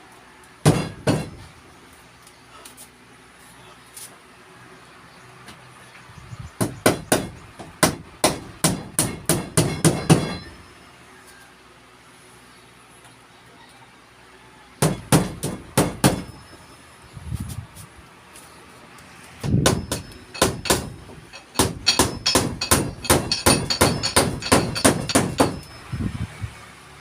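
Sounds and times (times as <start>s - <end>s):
hammer blows: 19.4s - 25.9s.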